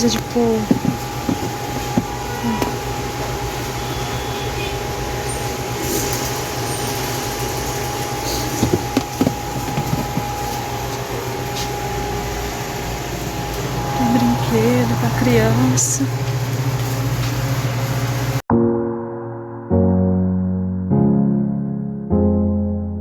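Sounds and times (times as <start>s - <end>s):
shop background hum: 0.0s - 18.4s.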